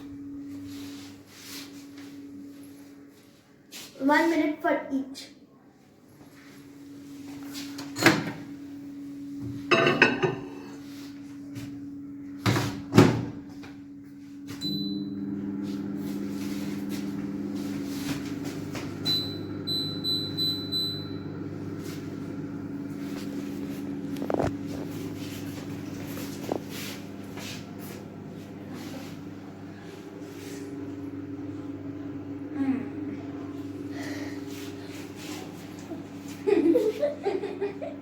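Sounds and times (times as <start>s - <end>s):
microwave humming: 0.0s - 3.7s, 6.0s - 38.0s
microwave beeps: 7.5s - 10.8s, 14.5s - 24.5s.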